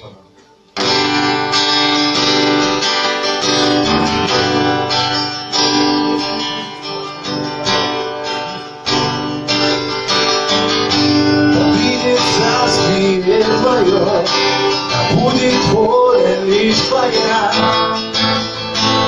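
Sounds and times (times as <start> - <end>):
acoustic guitar strumming: 0.0 - 19.0
held low note: 3.6 - 4.8.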